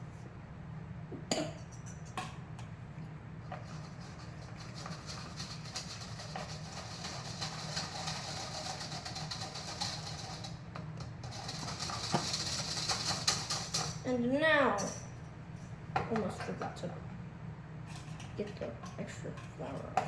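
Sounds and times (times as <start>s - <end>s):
flour sifter rattling and scraping: 3.5s - 14.3s.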